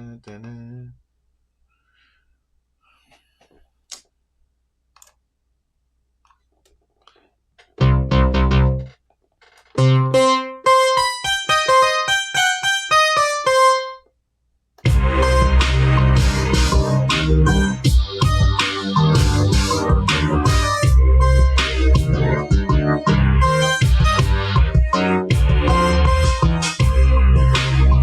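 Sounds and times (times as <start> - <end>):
electric piano synth notes: 9.8 - 14.0
drum and bass beat: 14.8 - 28.0.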